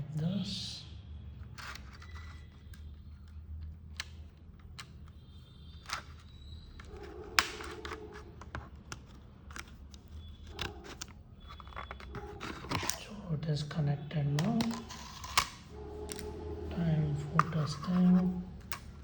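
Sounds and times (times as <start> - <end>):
small clicks and taps: 1.5 - 5.2.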